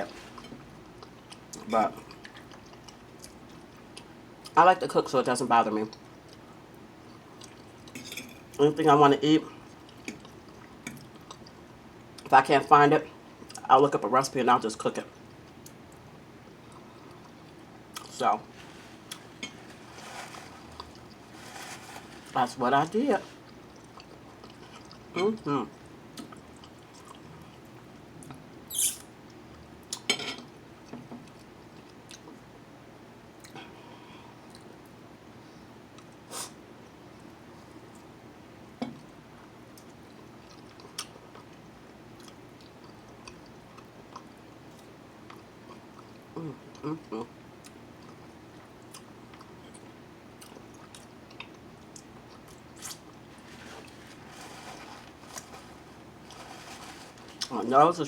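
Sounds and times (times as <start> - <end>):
soft chewing: 0.0 - 4.6, 5.9 - 8.1, 9.5 - 12.3, 15.1 - 25.1, 25.7 - 28.4, 33.4 - 35.0, 39.3 - 57.6.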